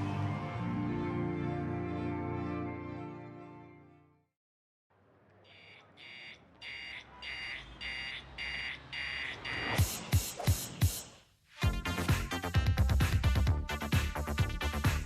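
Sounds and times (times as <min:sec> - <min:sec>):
electronic alarm beeping: 0:05.5 - 0:10.0.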